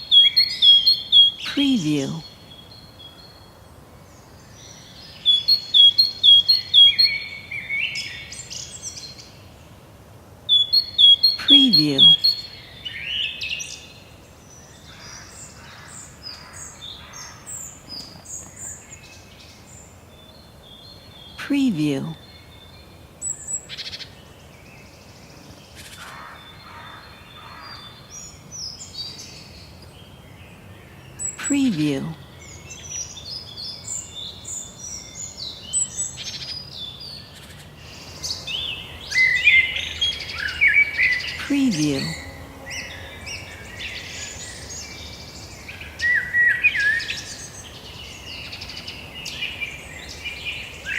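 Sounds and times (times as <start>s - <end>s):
faint background hiss: 0.0s - 50.9s
forest birds singing: 0.0s - 50.9s
birds chirping and whistling: 5.2s - 9.2s, 10.5s - 13.6s, 37.8s - 50.9s.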